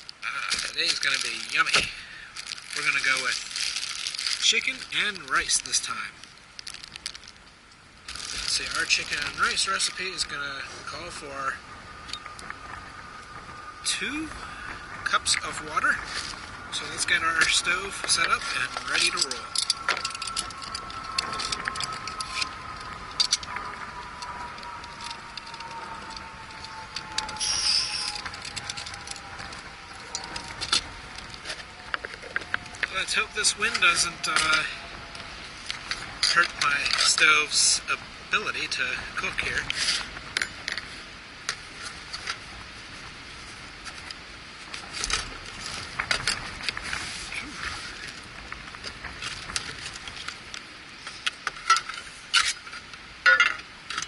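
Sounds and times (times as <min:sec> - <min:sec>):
cook gear clicks and clatter: 0:00.0 - 0:03.4
wind buffeting microphone: 0:00.6 - 0:51.0
camp stove gear clinking: 0:18.0 - 0:22.5, 0:53.2 - 0:54.0.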